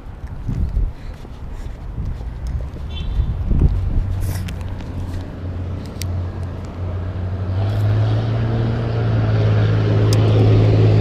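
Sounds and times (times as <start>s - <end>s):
engine running: 3.9s - 11.0s.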